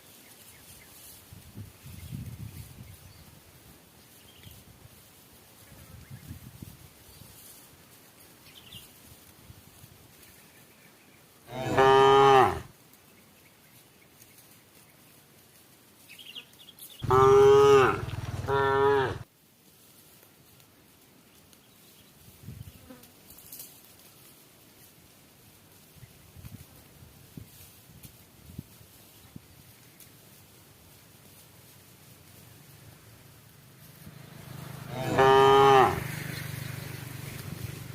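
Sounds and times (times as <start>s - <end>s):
cow mooing: 11.5s - 12.7s, 17.0s - 19.2s, 34.4s - 36.2s.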